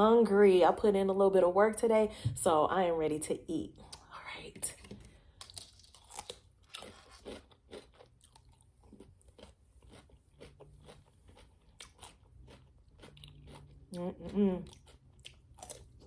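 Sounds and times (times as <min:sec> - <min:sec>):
crisp sandwich crunching: 0:05.4 - 0:13.7.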